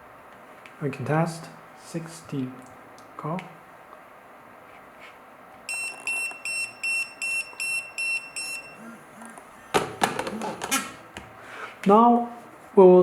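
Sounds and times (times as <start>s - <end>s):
pager short electronic beeps: 5.7s - 9.0s.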